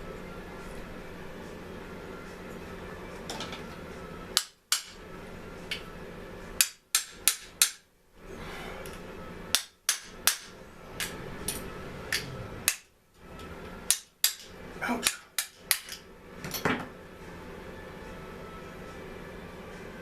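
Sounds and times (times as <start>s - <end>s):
hand tools knocking and clicking: 4.4s - 5.0s, 9.5s - 12.8s, 13.9s - 16.8s.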